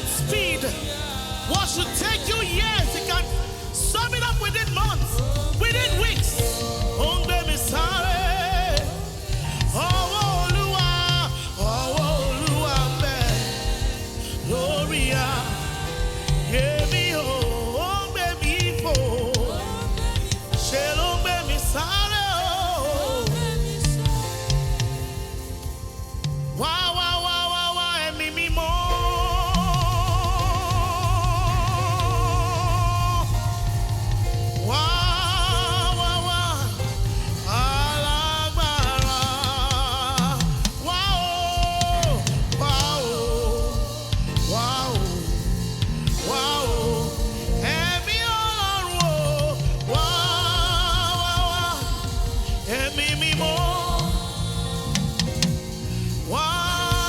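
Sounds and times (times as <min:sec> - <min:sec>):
bass and drum backing: 0:00.0 - 0:57.0
person singing with vibrato: 0:00.0 - 0:57.0.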